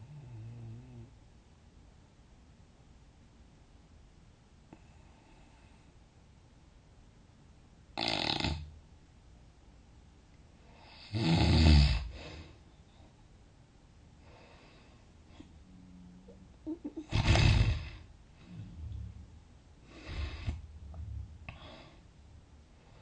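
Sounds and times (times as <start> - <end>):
person snoring loudly: 11.1 - 12.2, 17.1 - 19.2.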